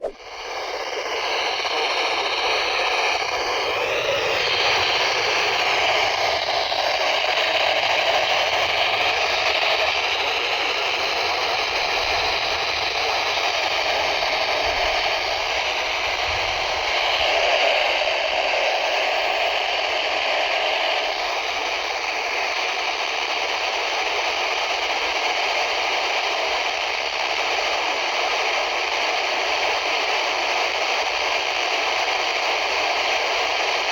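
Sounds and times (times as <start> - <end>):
faint wavering whistles: 0.0 - 4.9
radio static hiss: 0.0 - 19.9.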